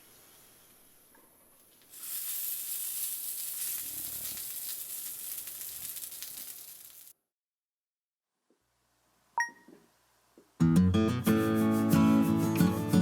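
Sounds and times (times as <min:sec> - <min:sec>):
food sizzling in a hot pan: 0:01.6 - 0:07.2.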